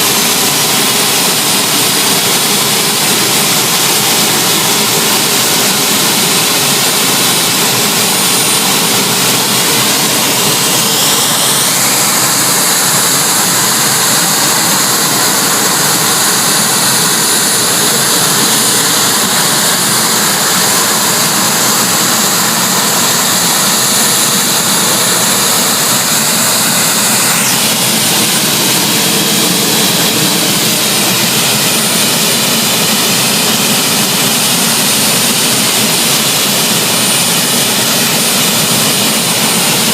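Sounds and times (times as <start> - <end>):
gas turbine engine whine: 0.0 - 39.9.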